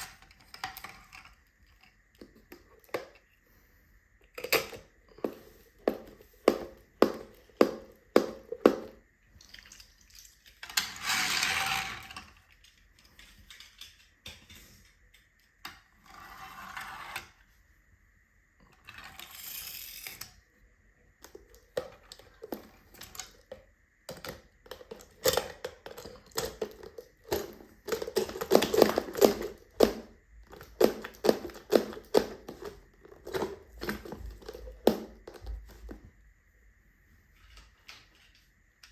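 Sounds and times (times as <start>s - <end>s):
toy cars clicking and clattering: 0.0s - 3.2s, 9.4s - 17.4s, 18.8s - 20.4s, 21.5s - 33.6s
toy cars scraping: 10.6s - 12.4s, 16.0s - 17.4s, 18.8s - 20.4s.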